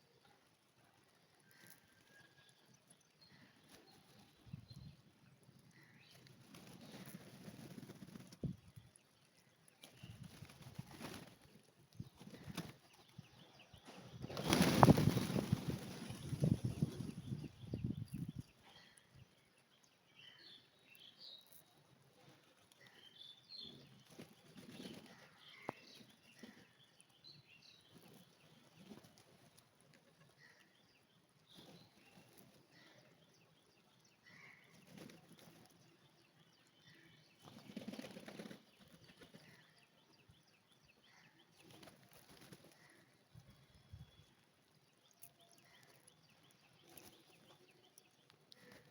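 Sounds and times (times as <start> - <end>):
wings flapping: 6.3 - 8.5, 9.8 - 11.6, 12.2 - 12.8, 13.9 - 17.2, 37.4 - 39.6, 41.6 - 43.0.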